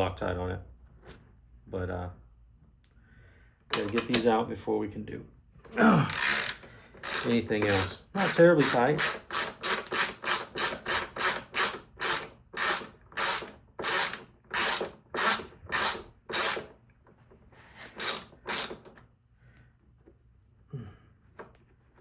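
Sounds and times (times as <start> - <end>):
socket ratchet clicking: 6.1 - 16.7, 18.0 - 18.8.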